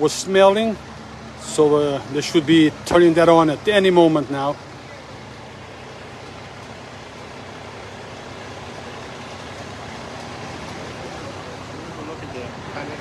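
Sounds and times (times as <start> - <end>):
low engine rumble: 0.0 - 13.0
street noise: 0.0 - 13.0.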